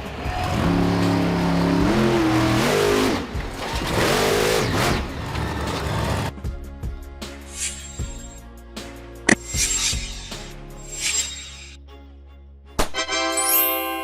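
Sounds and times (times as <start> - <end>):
truck engine revving: 0.3 - 6.3.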